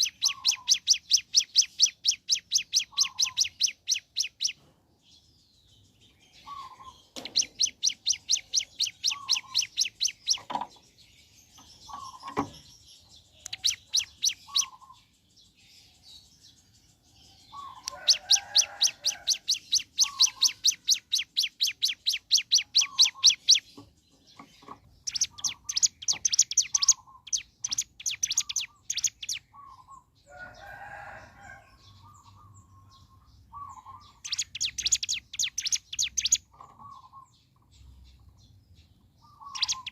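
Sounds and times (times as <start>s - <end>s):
bird rapid rattling trill: 7.2s - 10.6s, 18.0s - 23.8s.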